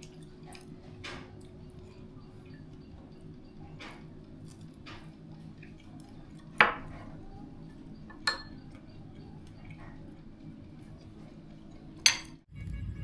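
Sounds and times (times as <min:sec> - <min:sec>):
utensils and dishes clinking: 0:00.0 - 0:10.2, 0:10.8 - 0:12.5
low steady hum: 0:12.5 - 0:13.0.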